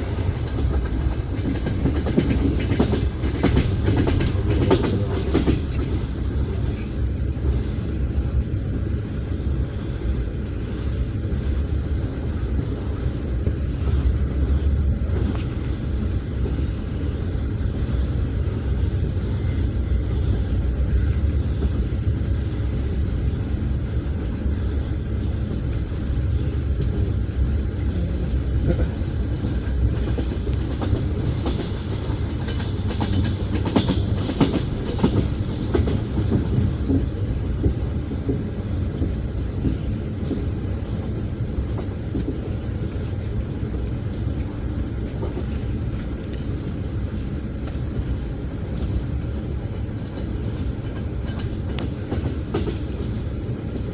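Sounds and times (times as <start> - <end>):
train wheels clattering over rail joints: 0.0 - 7.6, 28.7 - 53.9.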